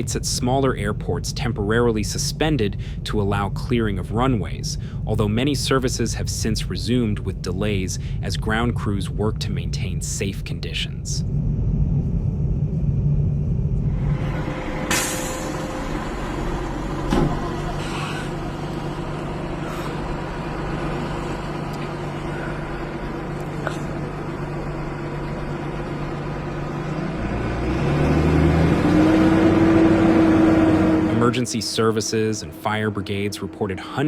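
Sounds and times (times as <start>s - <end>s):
vehicle engine running: 0.0s - 34.0s
high rising tone: 11.2s - 34.0s.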